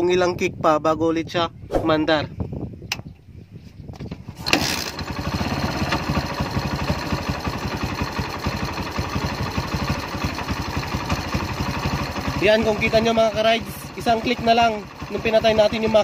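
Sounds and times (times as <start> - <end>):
motorcycle kick-started: 4.2 - 16.0
motorcycle engine idling: 5.0 - 16.0.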